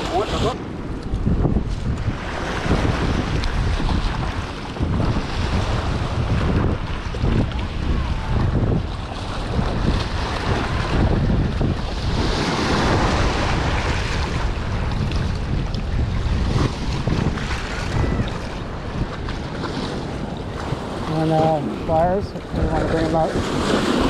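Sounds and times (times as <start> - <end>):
rushing water: 0.0 - 24.0
wind buffeting microphone: 0.0 - 24.0.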